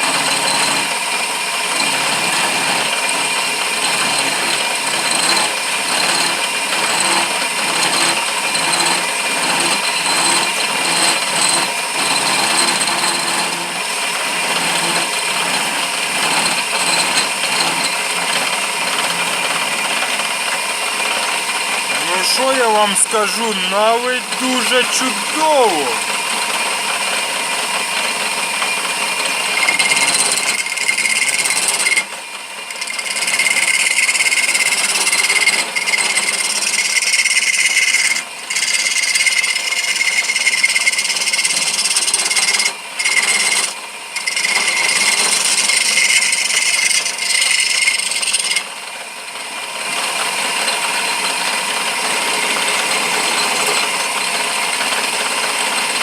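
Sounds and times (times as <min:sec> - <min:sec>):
wood lathe tool scraping wood: 0:36.9 - 0:48.6.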